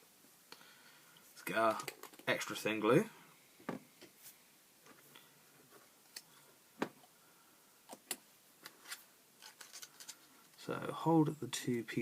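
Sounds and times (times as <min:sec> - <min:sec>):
plastic parts clicking and tapping: 0:01.7 - 0:02.3.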